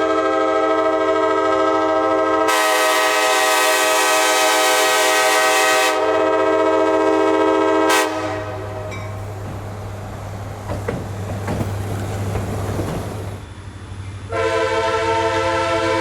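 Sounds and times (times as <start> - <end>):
train horn blast: 0.0 - 9.0, 14.3 - 16.0.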